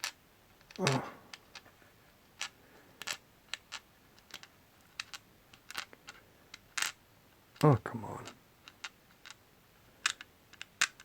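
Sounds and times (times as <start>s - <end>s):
small metal parts clicking: 2.4s - 7.0s, 7.6s - 9.4s, 10.0s - 11.0s.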